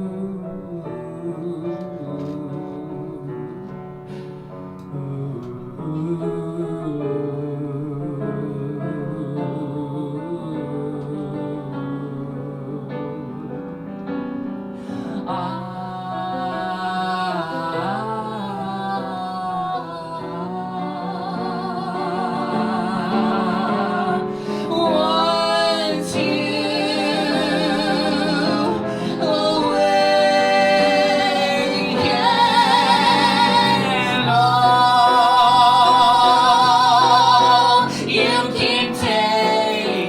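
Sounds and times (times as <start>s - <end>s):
musical accompaniment: 0.0s - 40.0s
woman singing with vibrato: 15.3s - 40.0s.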